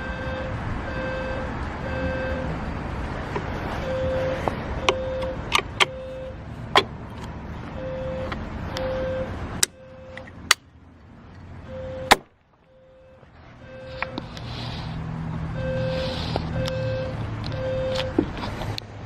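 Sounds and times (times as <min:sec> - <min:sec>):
sharp clicks and knocks: 0:06.7 - 0:07.4
fire alarm horn beeping: 0:11.7 - 0:12.1, 0:15.6 - 0:18.1.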